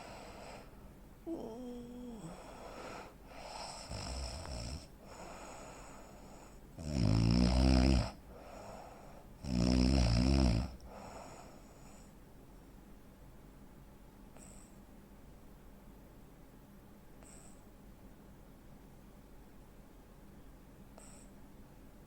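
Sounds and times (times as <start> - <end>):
man snoring heavily: 1.3 - 6.0, 6.8 - 8.6, 9.4 - 11.4.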